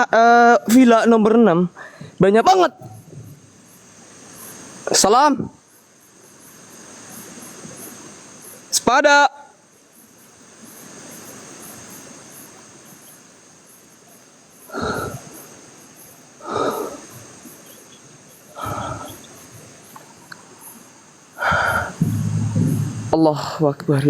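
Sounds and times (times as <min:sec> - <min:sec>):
crickets chirping: 0:00.0 - 0:24.0
loud noisy bursts: 0:21.4 - 0:23.5.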